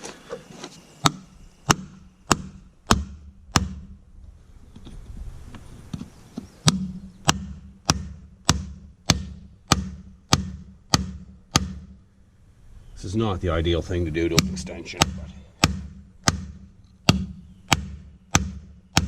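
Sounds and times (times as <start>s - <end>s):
hammer striking metal: 14.3s - 19.0s.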